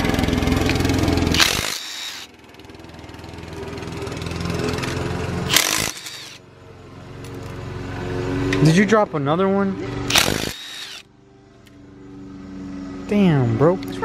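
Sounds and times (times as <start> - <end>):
steady machine hum: 0.0 - 7.0, 9.8 - 13.8
power tool bursts: 1.2 - 2.3, 4.8 - 6.4, 10.1 - 11.1.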